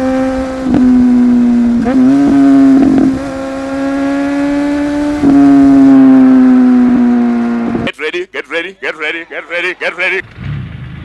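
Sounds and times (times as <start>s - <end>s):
motorcycle engine revving: 0.0s - 7.9s.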